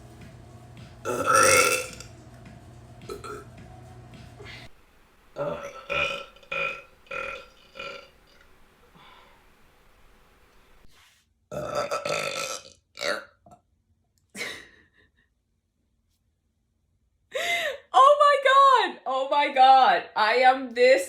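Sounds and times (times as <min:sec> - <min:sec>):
woman burping: 0:01.1 - 0:02.0, 0:03.1 - 0:03.4, 0:05.4 - 0:08.1, 0:11.5 - 0:13.4.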